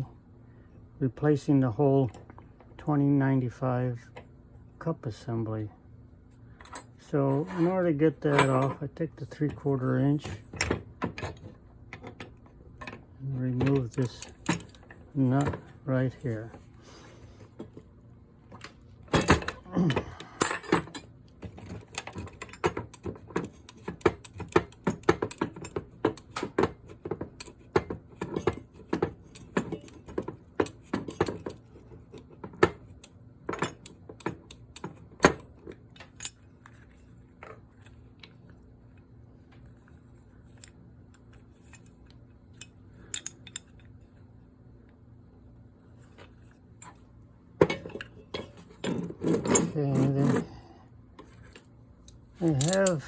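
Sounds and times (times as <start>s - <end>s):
metal parts knocking: 52.4s - 53.0s.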